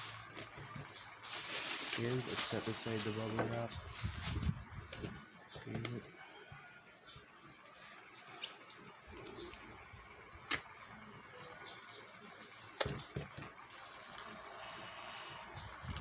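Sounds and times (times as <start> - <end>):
packaging rustling: 0.0 - 4.6, 13.6 - 16.0.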